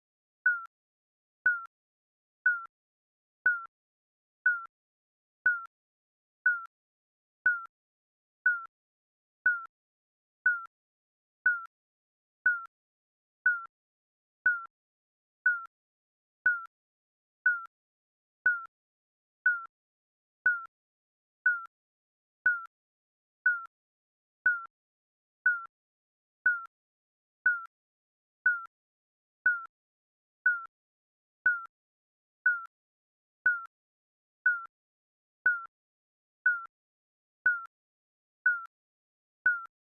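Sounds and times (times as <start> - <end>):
timer beeping: 0.5 - 0.7, 1.5 - 1.7, 2.5 - 2.7, 3.5 - 3.7, 4.5 - 4.7, 5.5 - 5.7, 6.5 - 6.7, 7.5 - 7.7, 8.5 - 8.7, 9.5 - 9.7, 10.5 - 10.7, 11.5 - 11.7, 12.5 - 12.7, 13.5 - 13.7, 14.5 - 14.7, 15.5 - 15.7, 16.5 - 16.7, 17.5 - 17.7, 18.5 - 18.7, 19.5 - 19.7, 20.5 - 20.7, 21.5 - 21.7, 22.5 - 22.7, 23.5 - 23.7, 24.5 - 24.7, 25.5 - 25.7, 26.5 - 26.7, 27.5 - 27.7, 28.5 - 28.7, 29.5 - 29.7, 30.5 - 30.7, 31.5 - 31.7, 32.5 - 32.7, 33.5 - 33.7, 34.5 - 34.7, 35.5 - 35.7, 36.5 - 36.7, 37.5 - 37.7, 38.5 - 38.7, 39.5 - 39.7.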